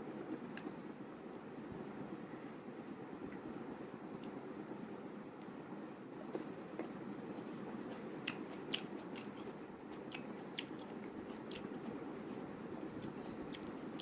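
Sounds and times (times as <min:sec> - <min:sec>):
low background noise: 0:00.0 - 0:14.0
chewing and wet mouth sounds: 0:06.8 - 0:12.4, 0:13.0 - 0:14.0.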